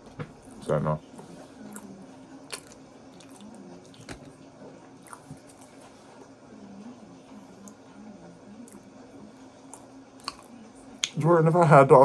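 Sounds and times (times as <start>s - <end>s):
chewing soft waffle: 0.4s - 6.4s, 8.6s - 11.2s.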